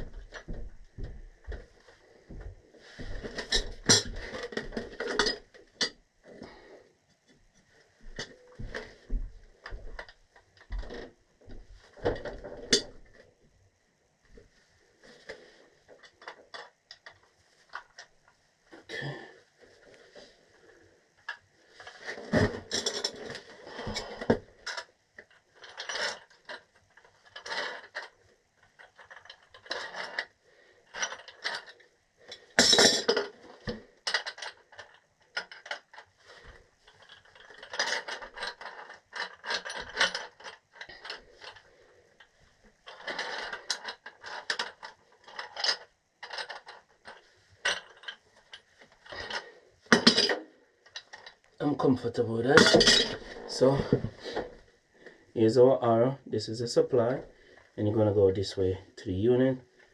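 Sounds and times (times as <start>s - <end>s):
metal clank: 52.6s - 53.2s.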